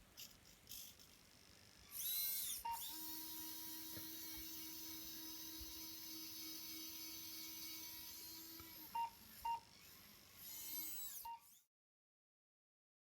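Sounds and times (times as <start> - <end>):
small electric motor whining: 0.2 - 11.7.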